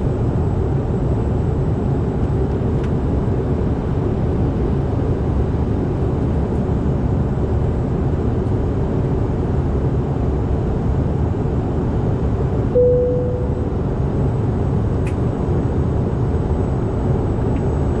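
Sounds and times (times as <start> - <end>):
jet cabin engine and airflow noise: 0.0 - 18.0
cabin chime: 12.8 - 13.6.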